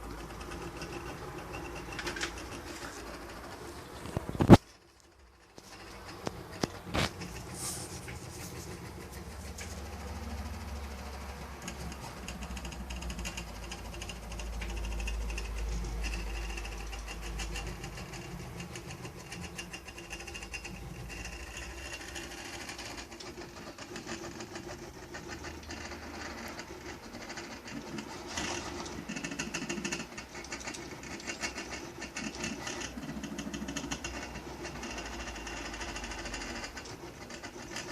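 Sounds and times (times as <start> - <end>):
stepper motors buzzing and ticking: 8.8 - 37.9.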